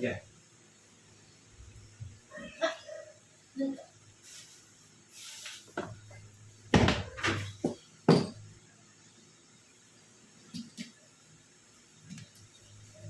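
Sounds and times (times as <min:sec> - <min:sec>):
short hiss: 0:04.2 - 0:05.8
hard objects knocking and clunking: 0:06.7 - 0:08.4.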